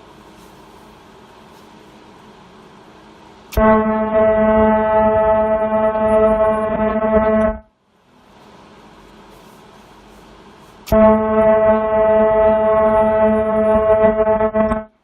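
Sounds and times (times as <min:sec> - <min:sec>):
low machine hum: 0:00.0 - 0:15.0
loud buzzing tone: 0:03.5 - 0:07.8, 0:10.8 - 0:15.0.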